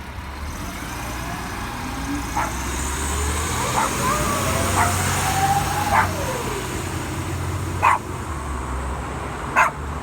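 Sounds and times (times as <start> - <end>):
low vehicle rumble: 0.0 - 10.0
dog barking: 2.4 - 2.6, 3.6 - 5.0, 5.9 - 6.2, 7.8 - 8.1, 9.6 - 9.9
dog whining: 3.6 - 6.4.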